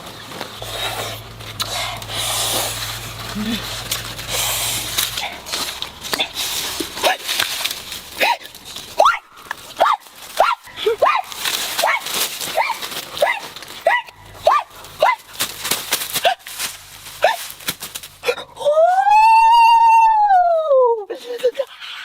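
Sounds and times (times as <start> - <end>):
dog whining: 0.6 - 6.4.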